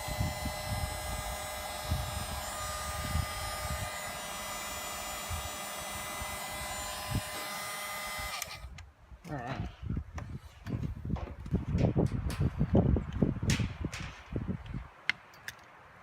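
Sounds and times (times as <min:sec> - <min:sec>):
heat gun blowing whir: 0:00.0 - 0:08.8.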